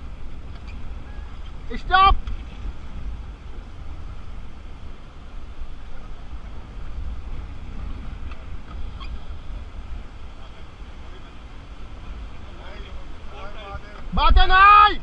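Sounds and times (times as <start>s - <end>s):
river water rushing: 0.0s - 15.0s
wind rumbling on microphone: 0.0s - 15.0s.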